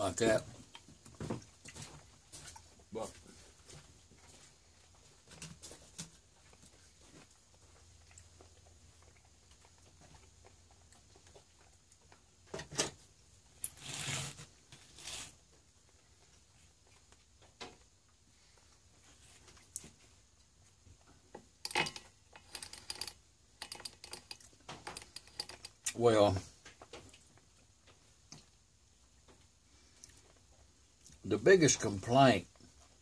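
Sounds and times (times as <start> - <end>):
short scrape or rustle: 13.6 - 15.4.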